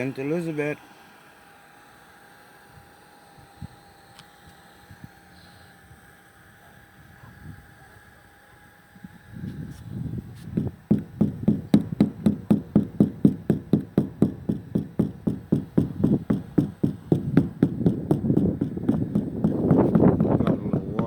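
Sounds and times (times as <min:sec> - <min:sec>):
rapid even knocking: 0:10.6 - 0:21.0.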